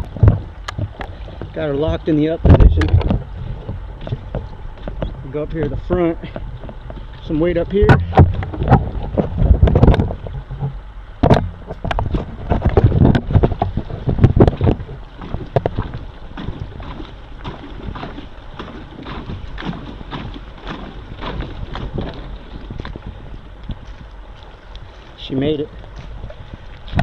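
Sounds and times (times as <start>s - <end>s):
boat hull knocking on logs: 0.0s - 23.8s.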